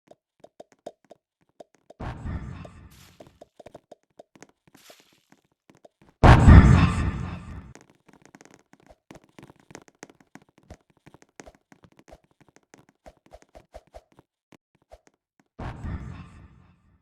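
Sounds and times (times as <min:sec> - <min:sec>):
small clicks and taps: 0:07.7 - 0:15.5.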